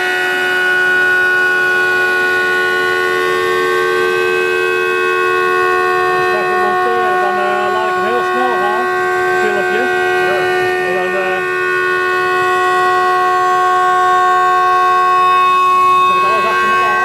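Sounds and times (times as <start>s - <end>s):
router spindle whine: 0.0s - 17.0s
wavering tones: 5.1s - 17.0s.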